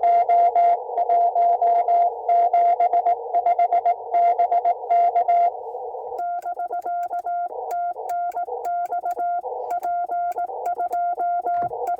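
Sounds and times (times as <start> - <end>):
morse code tone: 0.0 - 5.6, 6.2 - 11.9
faint keying clicks: 6.3 - 11.9.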